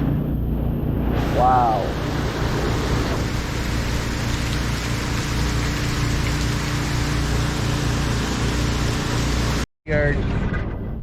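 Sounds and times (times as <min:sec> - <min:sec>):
heavy rain and wind: 0:01.0 - 0:09.6.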